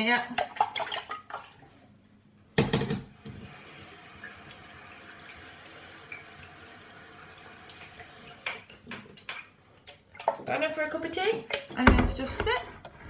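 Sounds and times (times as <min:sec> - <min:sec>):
tap water filling kettle: 0:02.6 - 0:10.5.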